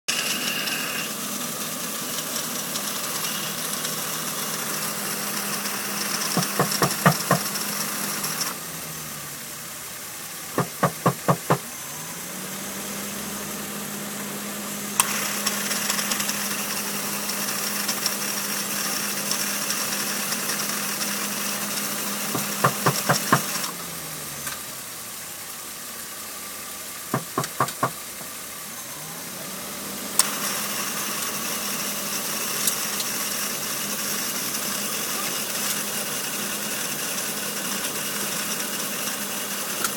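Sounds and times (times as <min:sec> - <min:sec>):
compressor winding rattling noise: 0:00.1 - 0:08.6, 0:10.5 - 0:11.7, 0:15.0 - 0:23.7, 0:27.1 - 0:28.4
car engine idling: 0:03.8 - 0:15.2, 0:22.0 - 0:28.8
compressor clutch click: 0:06.1 - 0:07.6, 0:22.4 - 0:23.7, 0:27.1 - 0:28.0
hand knocks: 0:06.4 - 0:07.4, 0:10.6 - 0:11.6, 0:27.2 - 0:28.0.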